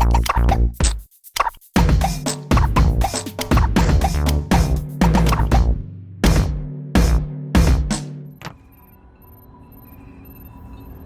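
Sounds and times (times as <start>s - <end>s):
heavy drum hits: 1.8s - 8.2s.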